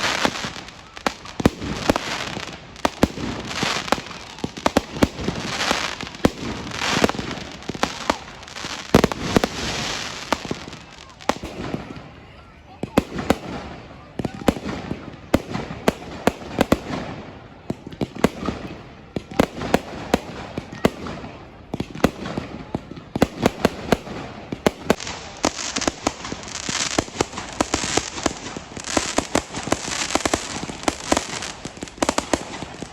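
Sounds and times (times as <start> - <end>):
fireworks bangs: 0.0 - 32.9.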